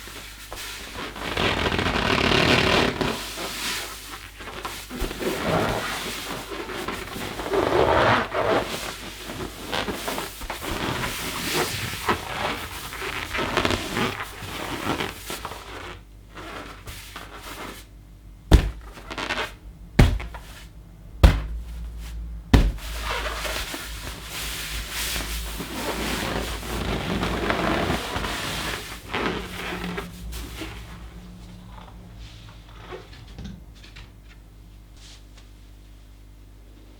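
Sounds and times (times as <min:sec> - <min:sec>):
rubber balloon squeaking: 0:01.1 - 0:03.2, 0:10.6 - 0:17.7, 0:18.5 - 0:20.6, 0:21.2 - 0:21.6, 0:22.5 - 0:30.8
thumps on balloon: 0:18.5 - 0:19.4, 0:20.0 - 0:21.8, 0:22.5 - 0:23.2.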